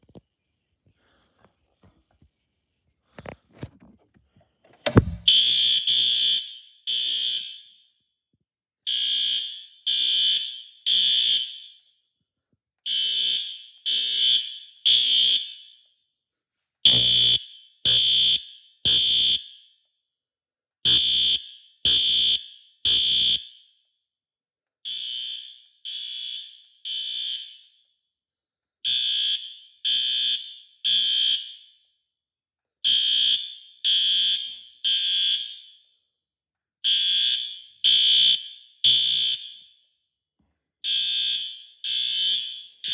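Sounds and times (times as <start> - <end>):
click: 4.7 - 5.4
fire alarm horns blasting: 4.8 - 8.0, 8.9 - 11.8, 12.9 - 15.7, 16.9 - 19.6, 20.9 - 23.6, 24.9 - 27.8, 28.9 - 31.8, 32.8 - 35.9, 36.9 - 39.8, 40.9 - 42.9.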